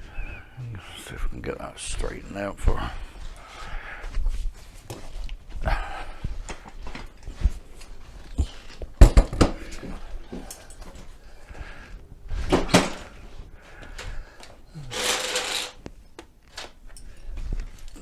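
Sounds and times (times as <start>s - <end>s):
hand tools clunking and clattering: 6.5s - 11.6s, 12.3s - 13.2s, 13.8s - 17.3s.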